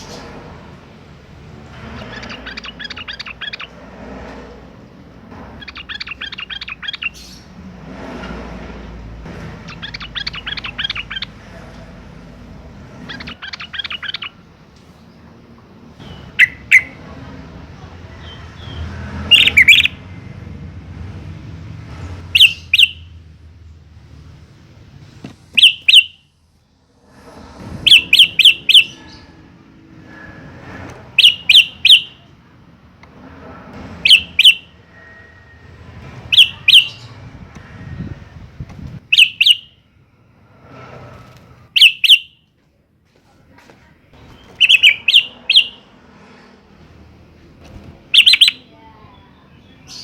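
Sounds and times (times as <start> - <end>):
soft bird chattering: 1.9 - 3.8, 5.6 - 7.6, 9.6 - 11.4, 13.0 - 14.4, 16.0 - 17.0, 19.3 - 20.0, 25.6 - 26.2, 27.8 - 29.3, 31.2 - 32.2, 34.0 - 34.6, 36.3 - 37.1, 39.1 - 39.7, 41.8 - 42.3, 44.4 - 45.8, 48.1 - 48.8
bulbul singing: 2.0 - 3.7, 5.6 - 7.5, 9.7 - 11.4, 13.0 - 14.4, 16.0 - 17.0, 19.3 - 20.0, 22.3 - 23.2, 25.6 - 26.3, 27.8 - 29.4, 31.2 - 32.3, 34.0 - 34.8, 36.3 - 37.2, 39.1 - 39.8, 41.8 - 42.4, 44.4 - 45.8, 48.1 - 50.0.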